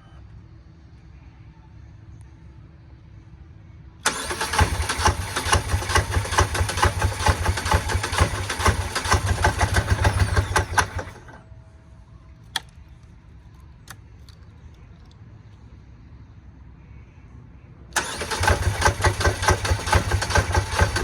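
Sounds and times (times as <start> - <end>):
engine cranking: 4.0 - 11.4, 18.0 - 21.0.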